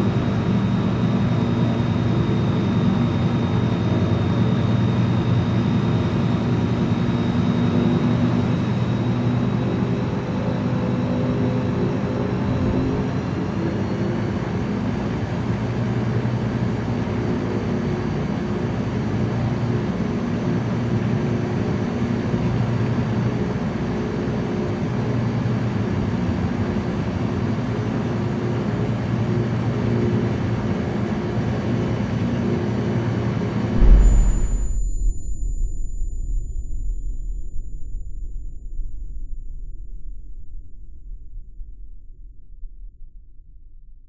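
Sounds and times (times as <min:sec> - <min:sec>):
light aircraft engine and propeller: 0:00.0 - 0:35.0
low thump: 0:12.4 - 0:13.1, 0:33.8 - 0:42.4.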